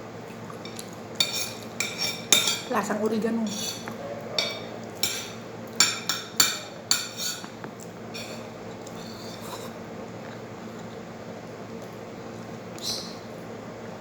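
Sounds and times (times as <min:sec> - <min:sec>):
cutlery clinking against plate: 0:00.6 - 0:02.7, 0:03.5 - 0:07.6, 0:08.2 - 0:09.8.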